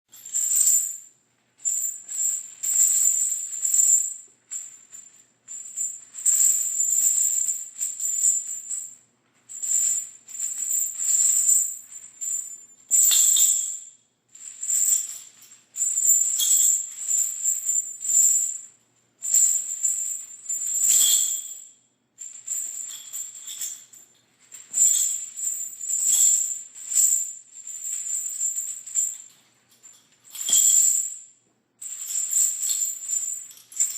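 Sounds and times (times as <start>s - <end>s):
metal chains rattling: 0.1s - 33.9s.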